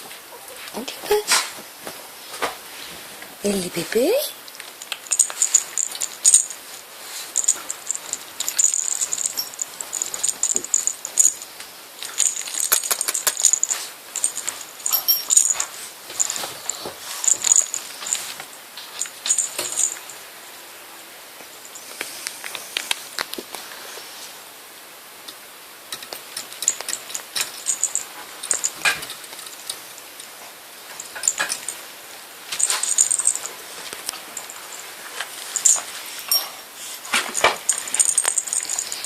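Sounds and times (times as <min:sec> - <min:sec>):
toy rattling and jingling: 0:03.5 - 0:20.2, 0:26.0 - 0:31.8, 0:32.5 - 0:39.0.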